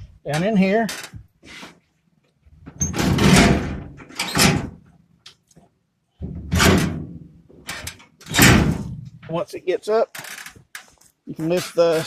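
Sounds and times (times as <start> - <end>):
toolbox latch rattling and clunking: 2.7 - 4.9, 6.2 - 9.3.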